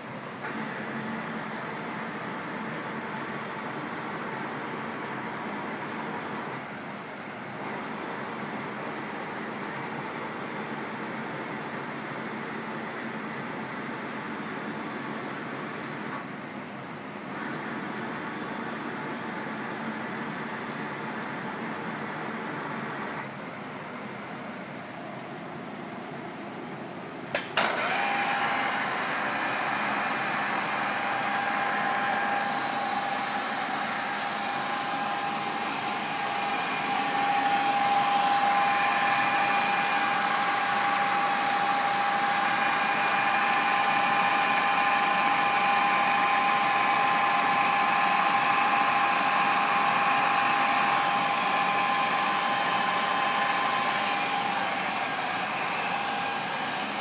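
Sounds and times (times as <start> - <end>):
milling machine motor whine: 27.6 - 57.0.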